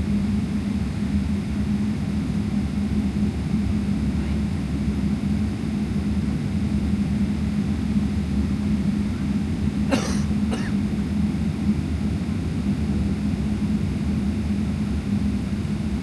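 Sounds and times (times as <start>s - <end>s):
person coughing: 9.9s - 10.8s.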